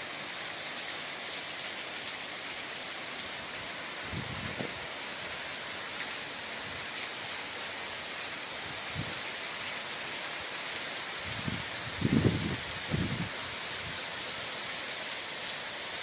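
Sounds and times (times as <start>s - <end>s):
steady rain falling: 0.0s - 16.0s.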